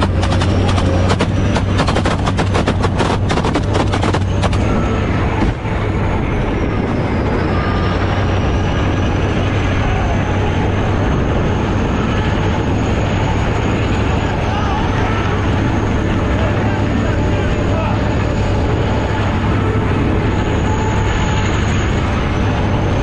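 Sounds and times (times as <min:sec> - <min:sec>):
rapid gunfire: 0:00.0 - 0:04.8
faint high whine: 0:00.0 - 0:23.0
vehicle-like rumble: 0:00.0 - 0:23.0.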